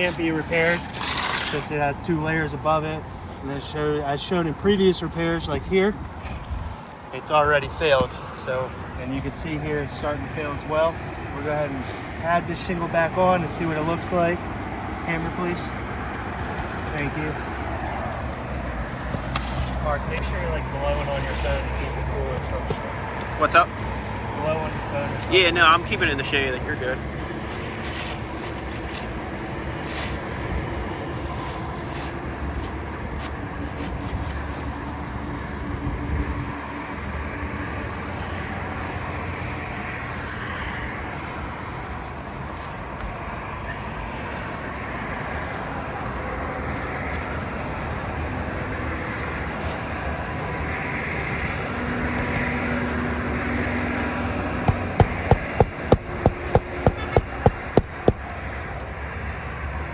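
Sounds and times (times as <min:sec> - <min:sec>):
distant road traffic: 0:00.0 - 0:59.9
hammer striking nails: 0:54.7 - 0:58.3.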